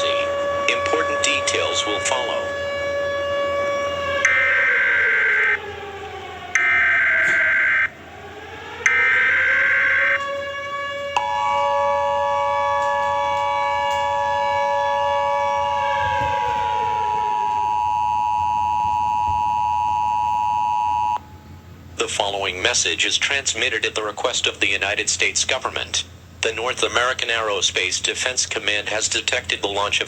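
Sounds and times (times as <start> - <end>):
wailing siren tone: 0.0 - 21.6
two-tone attention signal: 17.5 - 21.2.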